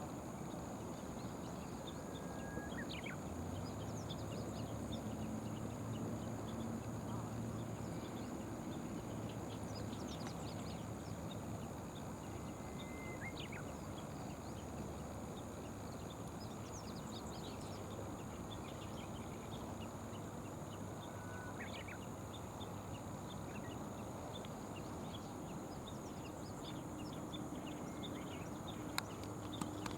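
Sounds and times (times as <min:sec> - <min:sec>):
outdoor background noise: 0:00.0 - 0:29.9
faint bird chirps: 0:12.3 - 0:13.8.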